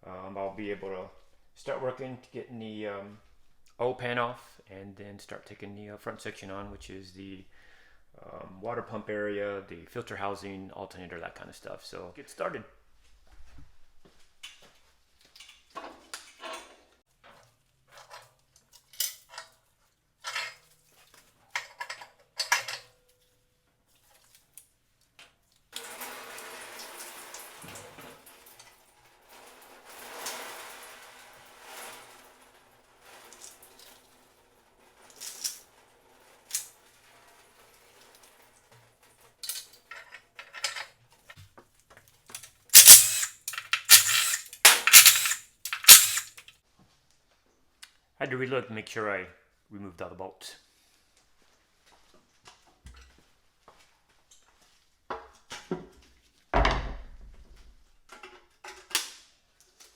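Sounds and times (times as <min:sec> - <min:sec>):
loud sharp clatter: 0:42.8 - 0:46.3
metal tools clinking: 0:42.8 - 0:46.3.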